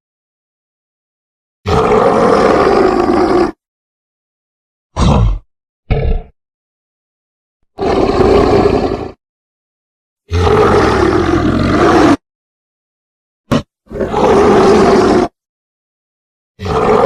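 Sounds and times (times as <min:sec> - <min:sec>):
rough roars: 0:01.7 - 0:03.6, 0:07.8 - 0:09.2, 0:10.3 - 0:12.2, 0:13.5 - 0:15.4, 0:16.6 - 0:17.0.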